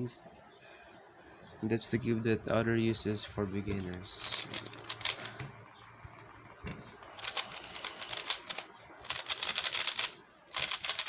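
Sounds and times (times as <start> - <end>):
speed cube clicking: 4.2 - 5.4, 7.0 - 11.0.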